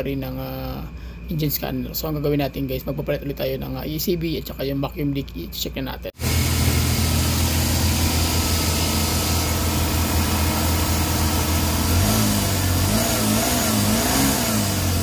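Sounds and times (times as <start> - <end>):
car engine idling: 6.2 - 15.0
wavering whine: 6.2 - 15.0.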